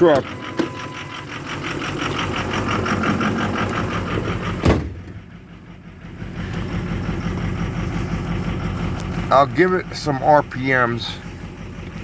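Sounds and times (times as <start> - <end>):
diesel engine idling rough: 0.0 - 12.0
truck door slamming: 3.6 - 5.3.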